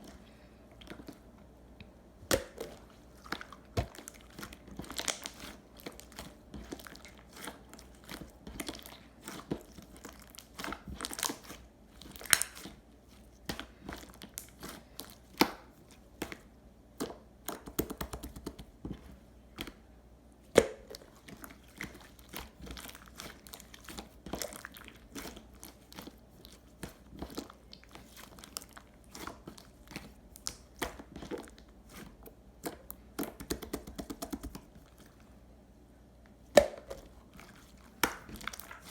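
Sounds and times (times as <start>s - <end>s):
slime squelching with sticky clicks: 0.0s - 35.4s, 36.2s - 38.9s.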